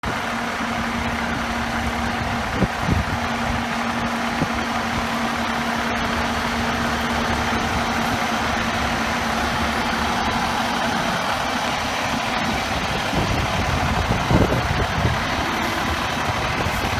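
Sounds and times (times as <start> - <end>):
heavy vehicle engine idling: 0.0 - 16.9.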